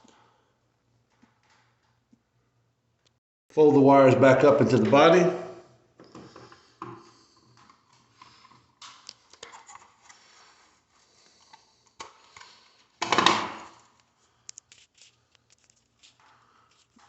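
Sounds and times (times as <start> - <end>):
wires clicking and rustling: 1.0 - 2.3, 13.7 - 17.0.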